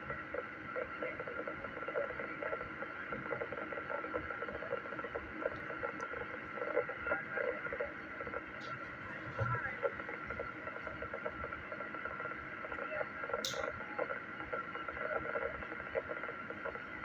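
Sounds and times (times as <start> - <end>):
radio hiss: 0.0 - 17.0
garbled radio voice: 6.6 - 11.4.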